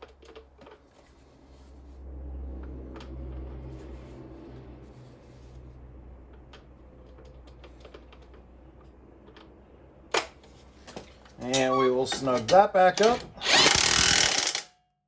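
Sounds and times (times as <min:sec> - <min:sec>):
metal nuts clicking: 0:11.4 - 0:14.7.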